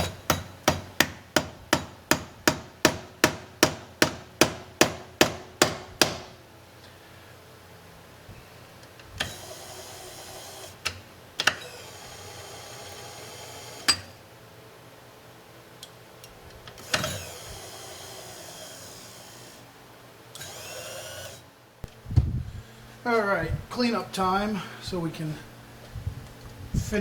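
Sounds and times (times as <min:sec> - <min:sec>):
power feed motor running: 0:16.8 - 0:19.7, 0:20.4 - 0:21.4.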